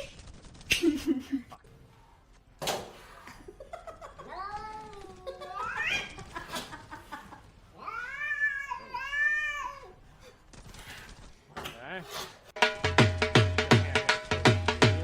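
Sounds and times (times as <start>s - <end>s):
cat yowling: 7.8s - 10.0s.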